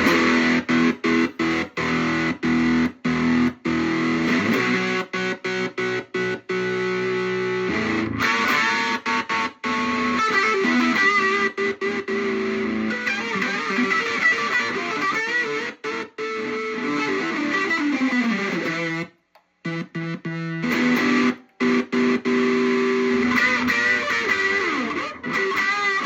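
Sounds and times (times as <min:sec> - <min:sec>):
distorted electric guitar: 0:00.0 - 0:26.0.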